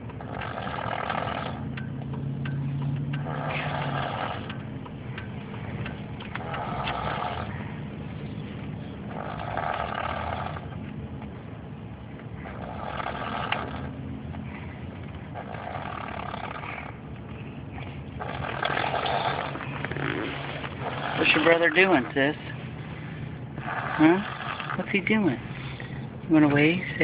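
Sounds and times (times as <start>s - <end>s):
boy snoring with rasping snore: 0.2s - 1.7s, 3.1s - 4.6s, 6.4s - 7.6s, 9.1s - 10.8s, 12.4s - 14.0s, 15.3s - 17.0s, 18.2s - 22.4s, 23.6s - 25.8s.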